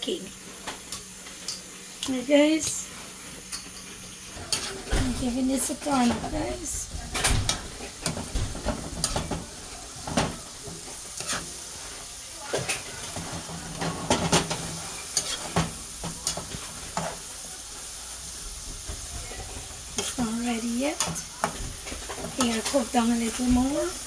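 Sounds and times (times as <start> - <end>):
steady sizzle: 0.0 - 24.0
utensil scraping a pan: 3.5 - 17.3, 18.8 - 24.0.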